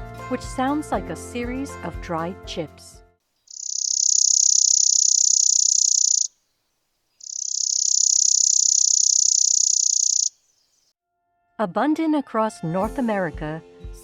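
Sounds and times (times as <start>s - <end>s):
sparrow dry trills: 3.4s - 6.5s, 7.1s - 10.9s.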